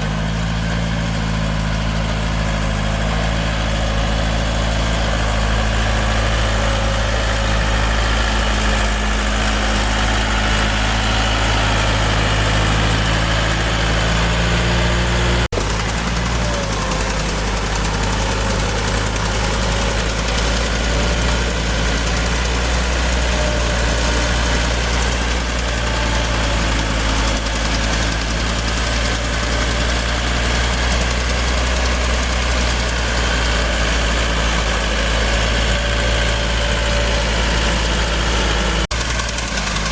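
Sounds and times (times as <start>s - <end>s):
heavy vehicle engine idling: 0.0s - 39.9s.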